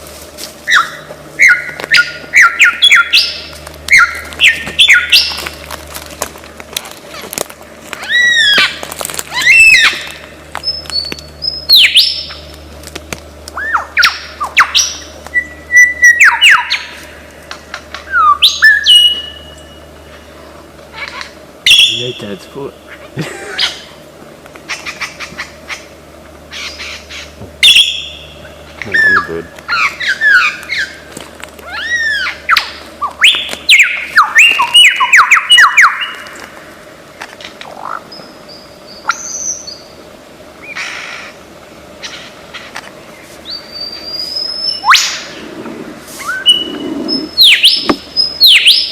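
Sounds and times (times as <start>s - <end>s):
lyrebird mimicking whistles: 0.7s - 5.4s, 8.0s - 12.4s, 13.6s - 17.0s, 18.0s - 19.7s, 31.6s - 36.2s, 43.4s - 45.5s, 46.2s - 48.9s.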